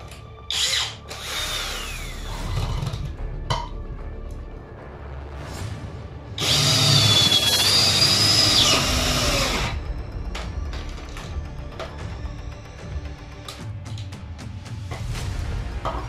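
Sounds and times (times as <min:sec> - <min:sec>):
power tool whining: 0:00.5 - 0:03.0, 0:06.4 - 0:09.8.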